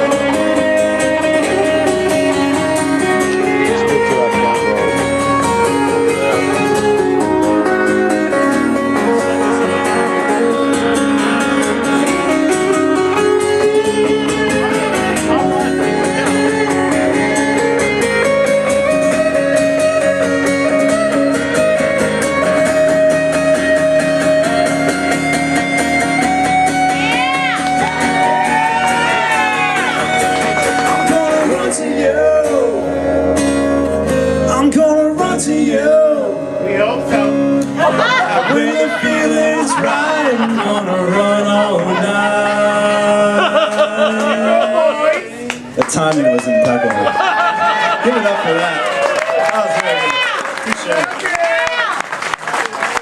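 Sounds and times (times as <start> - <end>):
guitar strumming chords: 0.0 - 48.0
person singing: 29.0 - 33.3, 34.3 - 36.6, 37.8 - 45.5.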